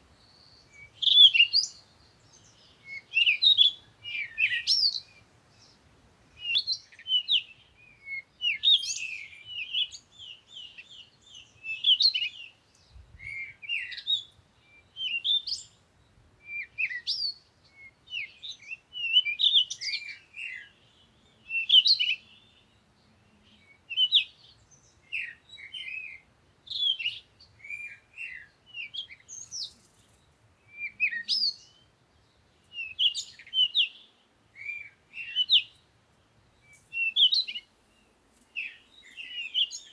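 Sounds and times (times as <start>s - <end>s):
songbirds chirping: 0.0s - 39.9s.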